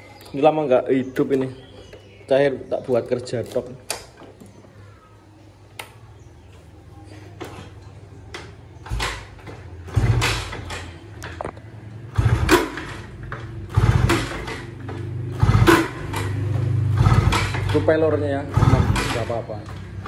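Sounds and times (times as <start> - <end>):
moped engine cranking and sputtering: 8.3 - 20.0.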